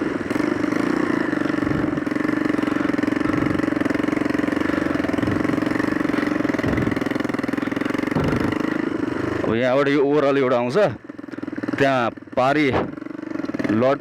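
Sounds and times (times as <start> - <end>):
leaky exhaust noise: 0.0 - 9.2
motorcycle engine running: 0.0 - 14.0.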